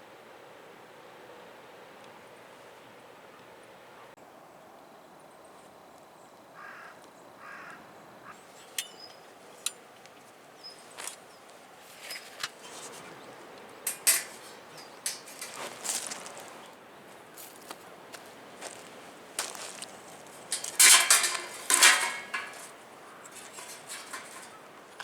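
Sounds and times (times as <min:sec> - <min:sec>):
soft scuffs and scrapes: 0:15.2 - 0:21.7.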